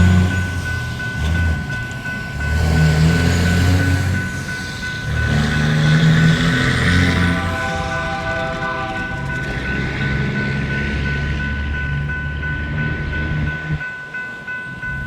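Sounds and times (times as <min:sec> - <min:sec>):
diesel locomotive engine rumble: 0:00.0 - 0:15.0
locomotive air horn chord: 0:05.0 - 0:10.4.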